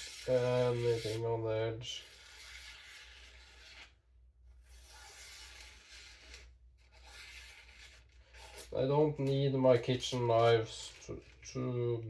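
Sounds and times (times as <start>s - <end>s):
hands rubbing knife: 0.0s - 1.3s.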